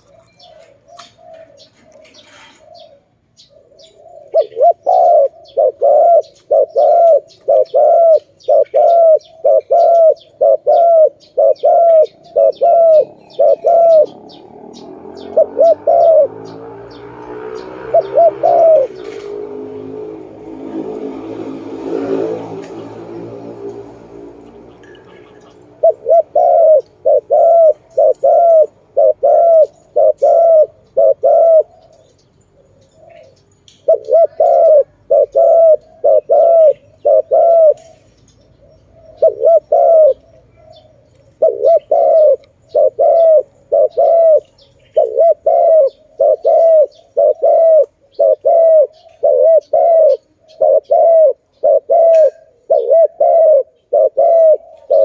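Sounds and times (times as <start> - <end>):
dove cooing: 0.0 - 22.7, 24.2 - 55.0.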